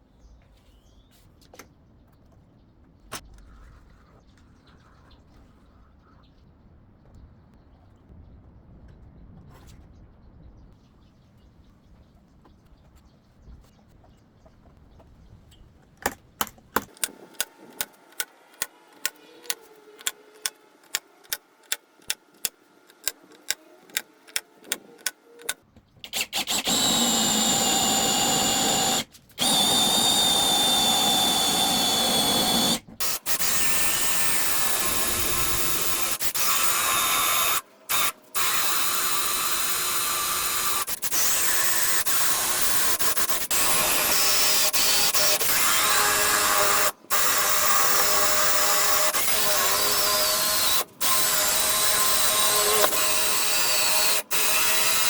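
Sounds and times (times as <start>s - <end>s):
sharp clicks: 16.0s - 27.8s
power drill whining: 16.8s - 55.0s.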